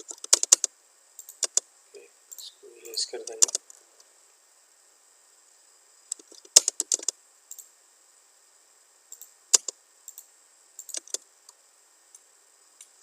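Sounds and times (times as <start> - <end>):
keyboard typing: 0.0 - 1.6, 2.3 - 3.6, 6.1 - 7.7, 9.1 - 10.2, 10.8 - 11.2.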